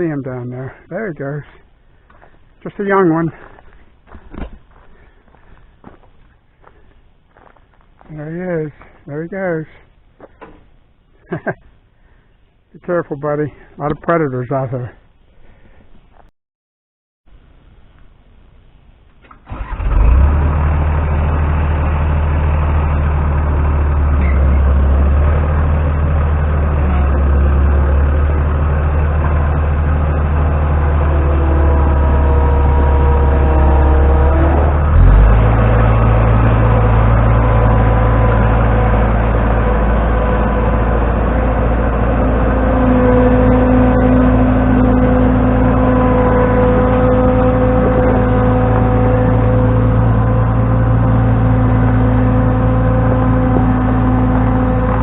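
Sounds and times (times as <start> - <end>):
forklift engine running: 19.2 - 55.0.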